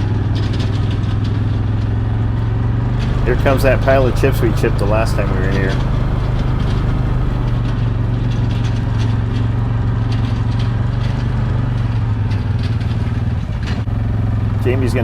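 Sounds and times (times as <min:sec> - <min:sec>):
utility vehicle engine running: 0:03.0 - 0:07.6, 0:13.9 - 0:15.0.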